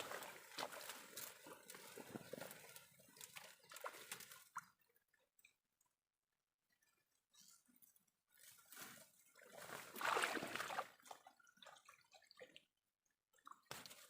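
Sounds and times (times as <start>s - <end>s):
water dripping: 0.0s - 6.0s
water splashing and sloshing: 0.0s - 6.0s, 6.6s - 14.0s.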